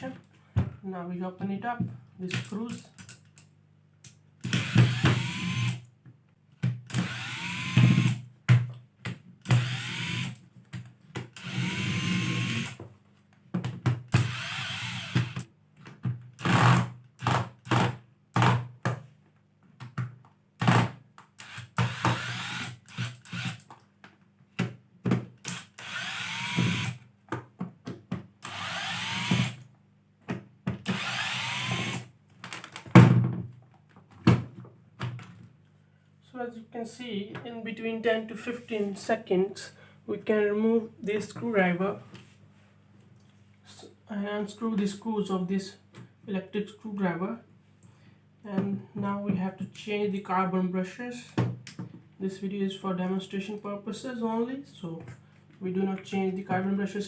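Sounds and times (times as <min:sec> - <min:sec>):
electric screwdriver whining: 0:04.4 - 0:05.8, 0:06.9 - 0:08.2, 0:09.5 - 0:10.4, 0:11.4 - 0:12.8, 0:14.2 - 0:15.4, 0:21.4 - 0:23.7, 0:25.5 - 0:27.0, 0:28.4 - 0:29.6, 0:30.8 - 0:32.0.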